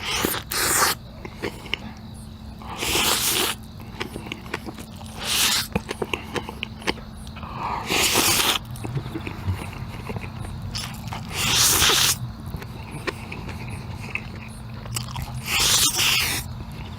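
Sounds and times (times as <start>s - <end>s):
noodles slurped loudly: 0.0s - 1.5s, 2.7s - 6.5s, 7.7s - 12.2s, 15.0s - 16.5s
wet chewing and lip-smacking: 0.0s - 16.9s.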